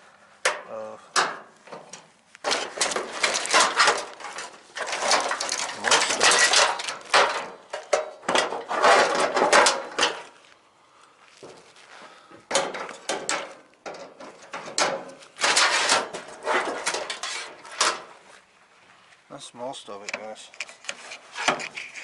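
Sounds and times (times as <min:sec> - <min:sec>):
metal parts clattering and scraping: 0:00.5 - 0:10.4, 0:12.5 - 0:18.3, 0:20.4 - 0:22.0.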